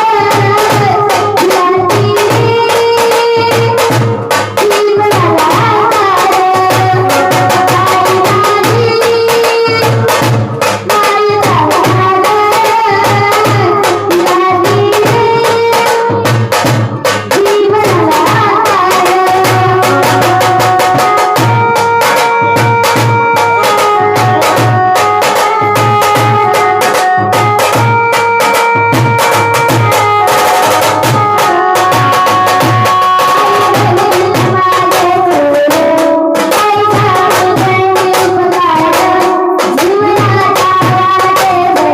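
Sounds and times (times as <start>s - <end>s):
steady drum beat: 0.0s - 41.9s
melody instruments holding notes: 19.1s - 34.7s.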